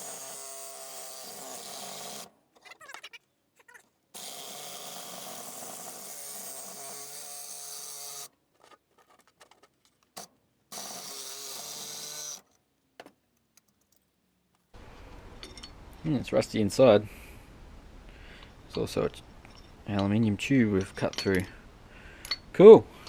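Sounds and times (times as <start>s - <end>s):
power saw cutting steel: 0.0s - 2.3s, 4.2s - 8.3s, 10.7s - 12.5s.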